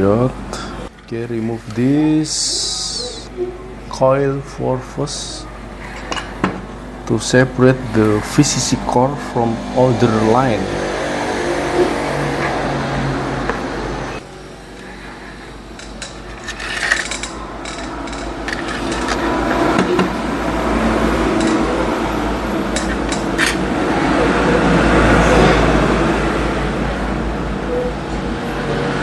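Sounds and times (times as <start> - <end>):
hot air station blowing: 5.2 - 27.6
small metal clicks and scrapes: 15.8 - 19.9, 22.8 - 23.6.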